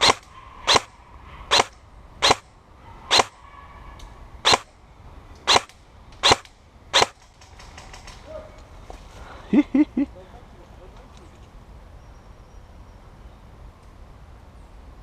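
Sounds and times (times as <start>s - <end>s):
airsoft gun shots: 0.0s - 0.9s, 1.5s - 2.4s, 3.1s - 3.4s, 4.4s - 4.7s, 5.5s - 7.2s.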